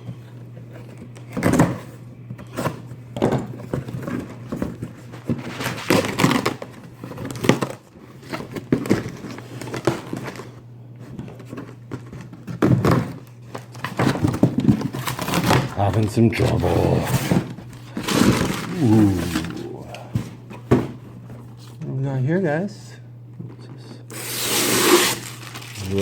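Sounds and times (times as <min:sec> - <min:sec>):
packaging rustling and crinkling: 0:03.6 - 0:20.6, 0:24.1 - 0:26.0.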